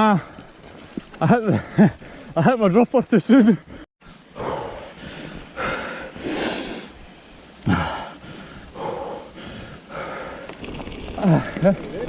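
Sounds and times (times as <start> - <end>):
person breathing heavily: 1.5 - 2.4, 3.6 - 7.0, 7.6 - 10.6.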